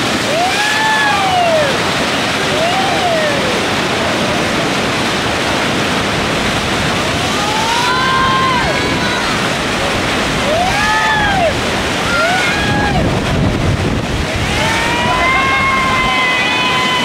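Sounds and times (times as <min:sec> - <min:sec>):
river rapids roaring: 0:00.0 - 0:17.0
people yelling: 0:00.2 - 0:04.5, 0:07.2 - 0:13.2, 0:14.2 - 0:17.0.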